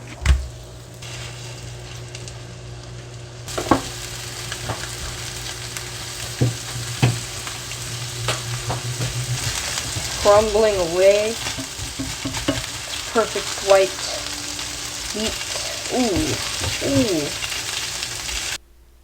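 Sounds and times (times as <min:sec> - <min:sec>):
fish sizzling in butter in a pan: 0:00.8 - 0:18.6.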